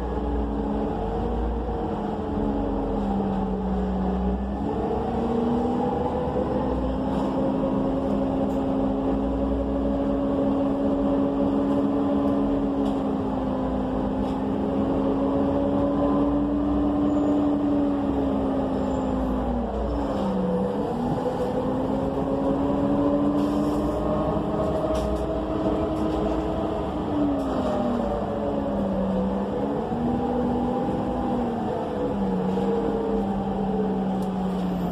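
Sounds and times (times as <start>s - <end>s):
bus engine running: 0.0s - 34.9s.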